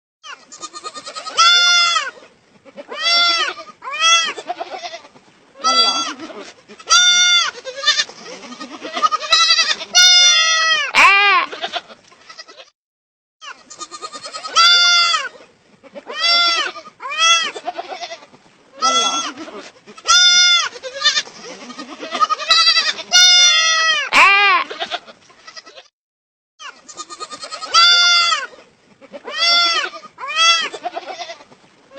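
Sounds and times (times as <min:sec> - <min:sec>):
lamb bleating: 0:00.2 - 0:12.7, 0:13.4 - 0:25.9, 0:26.6 - 0:31.5.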